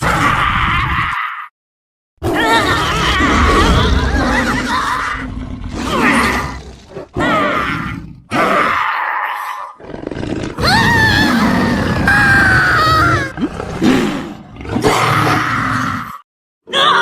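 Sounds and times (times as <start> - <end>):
deep growl: 2.2 - 8.8
monster roars: 2.2 - 16.2
shrill wavering cry: 10.6 - 13.4.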